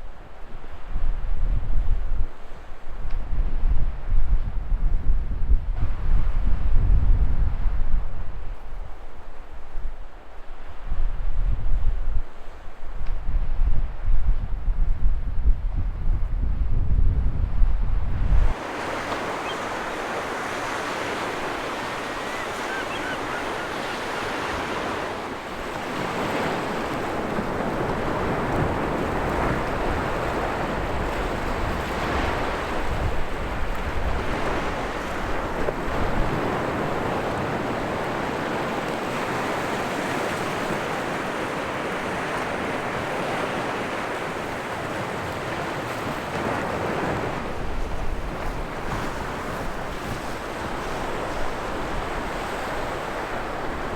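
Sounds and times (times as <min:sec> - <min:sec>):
sea waves washing up a beach: 0:18.4 - 0:53.9.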